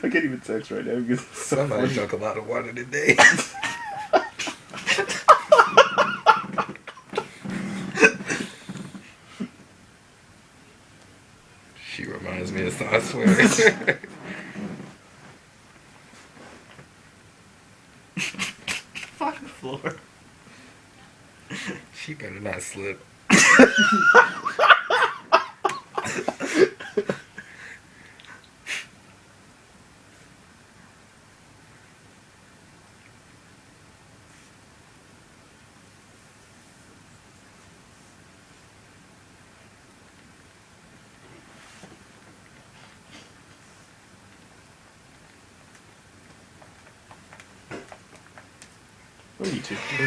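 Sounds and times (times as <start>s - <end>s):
low room noise: 0.0s - 50.0s
people laughing: 3.0s - 8.6s, 12.9s - 14.3s, 23.3s - 27.4s, 49.4s - 50.0s.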